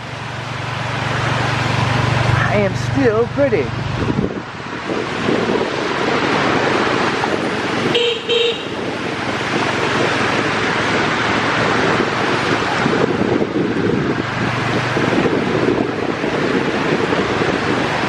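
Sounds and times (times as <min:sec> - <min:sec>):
heavy rain: 0:00.0 - 0:18.0
traffic on a flooded road: 0:00.0 - 0:18.0
vehicle horn toots: 0:07.8 - 0:08.9.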